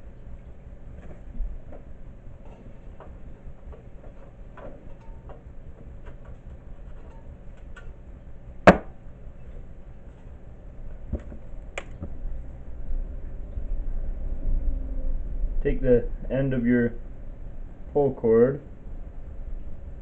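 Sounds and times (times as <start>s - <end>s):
sharp knock: 8.7s - 9.0s.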